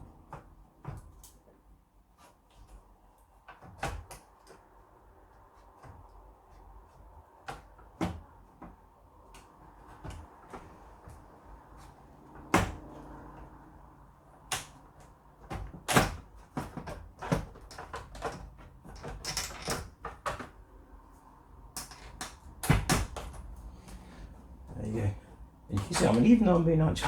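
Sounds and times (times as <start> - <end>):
plastic and metal clicks and knocks: 14.4 - 20.6, 21.7 - 23.4.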